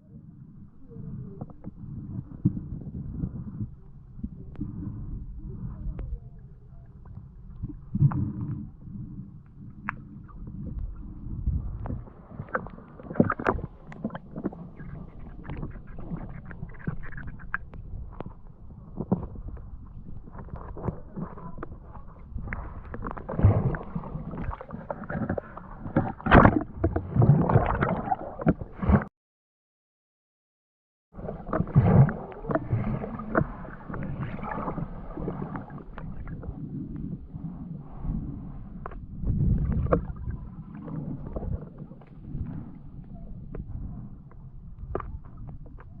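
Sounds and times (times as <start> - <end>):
water sloshing and gurgling: 0.0 - 29.1, 31.1 - 46.0.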